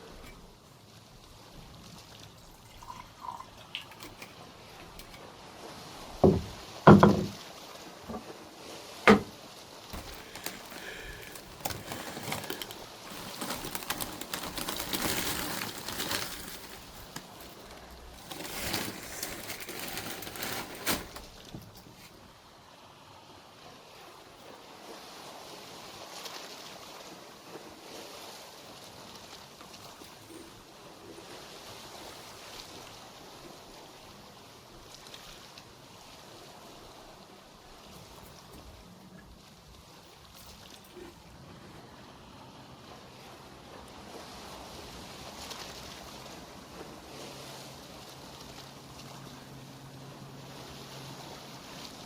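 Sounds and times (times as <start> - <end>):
liquid pouring and splashing: 1.8 - 5.3, 10.0 - 21.8
knocks and thuds: 6.2 - 7.4, 9.1 - 9.4.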